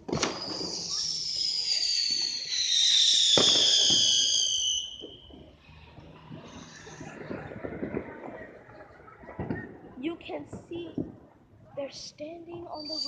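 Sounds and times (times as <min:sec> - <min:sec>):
firework whistle gliding down: 0:00.0 - 0:05.6, 0:12.7 - 0:13.0
firework bangs: 0:00.0 - 0:13.0.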